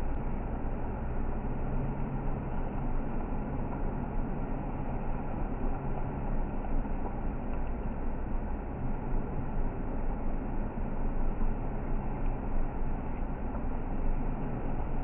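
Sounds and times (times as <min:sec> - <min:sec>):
vehicle engine low hum: 0:00.0 - 0:15.0.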